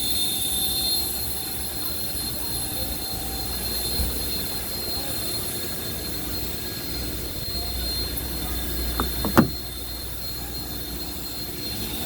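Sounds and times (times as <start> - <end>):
car low rumble: 7.2 - 9.8
sharp click: 9.0 - 9.7.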